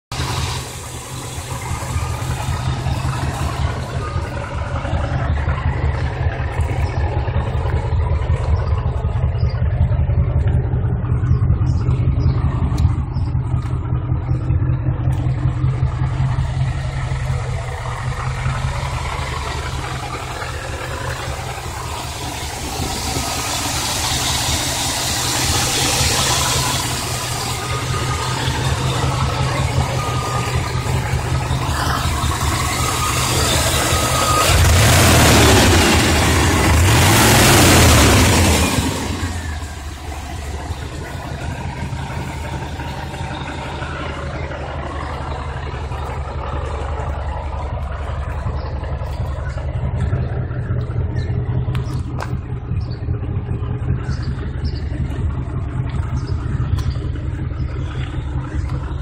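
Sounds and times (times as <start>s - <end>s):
pickup engine idling: 0.0s - 59.0s
hiss: 21.7s - 28.4s.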